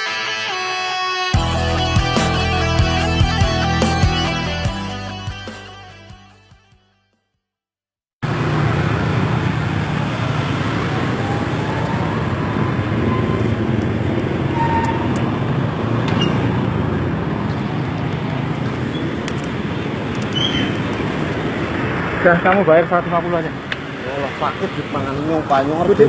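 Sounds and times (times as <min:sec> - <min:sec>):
tyres on road: 0:08.2 - 0:26.0
vehicle engines: 0:08.2 - 0:26.0.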